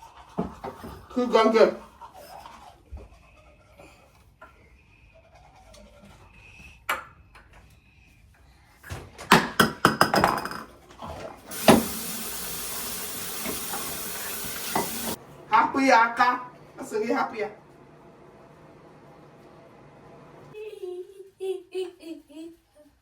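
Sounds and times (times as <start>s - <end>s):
steady hiss: 11.5s - 15.2s.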